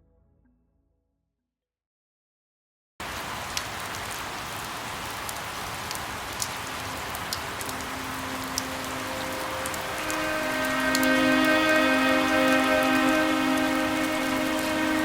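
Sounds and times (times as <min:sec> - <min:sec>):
steady rain: 0:03.0 - 0:15.0
faint soft music tones: 0:07.3 - 0:15.0.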